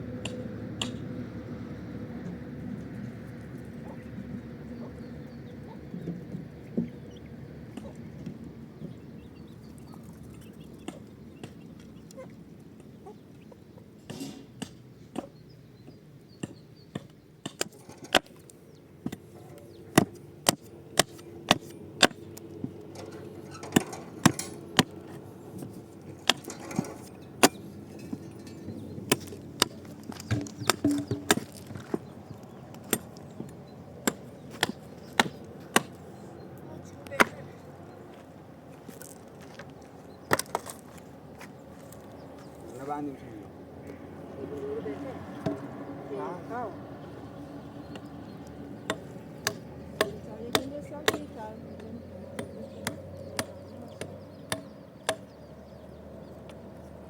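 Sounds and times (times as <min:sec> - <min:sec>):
sharp knocks: 0:19.9 - 0:32.1.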